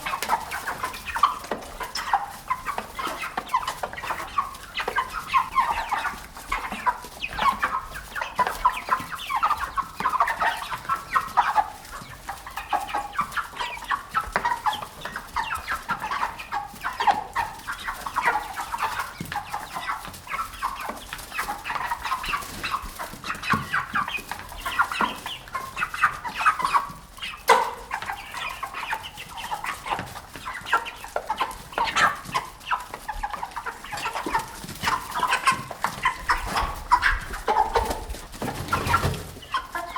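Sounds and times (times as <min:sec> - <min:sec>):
chickens clucking: 0:00.0 - 0:39.9.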